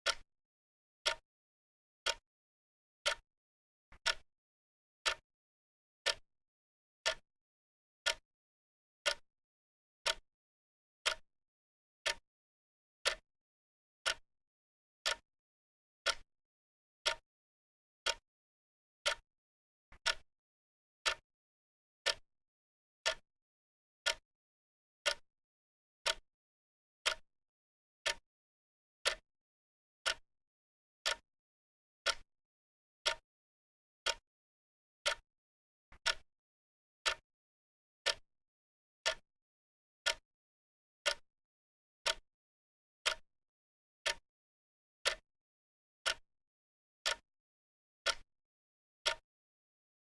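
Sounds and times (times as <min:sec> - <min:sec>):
clock ticking: 0:02.0 - 0:02.2, 0:04.0 - 0:04.2, 0:05.0 - 0:05.2, 0:10.0 - 0:10.2, 0:12.0 - 0:12.2, 0:16.0 - 0:16.2, 0:18.0 - 0:18.2, 0:21.0 - 0:21.2, 0:26.0 - 0:26.2, 0:28.0 - 0:28.2, 0:30.0 - 0:30.2, 0:31.0 - 0:31.2, 0:32.0 - 0:32.2, 0:33.0 - 0:33.2, 0:34.0 - 0:34.2, 0:42.0 - 0:42.2, 0:44.0 - 0:44.2, 0:46.0 - 0:46.2.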